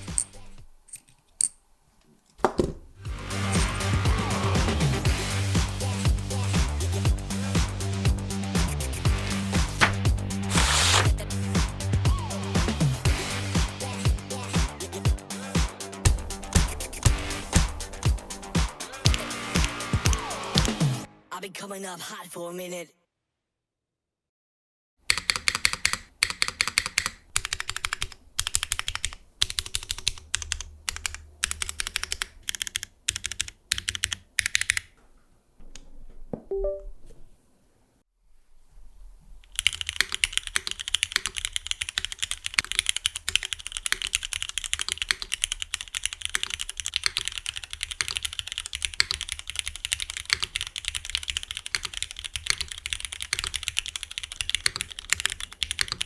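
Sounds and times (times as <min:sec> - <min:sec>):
mechanical keyboard typing: 0:16.1 - 0:20.8, 0:25.1 - 0:35.0, 0:39.5 - 0:56.0.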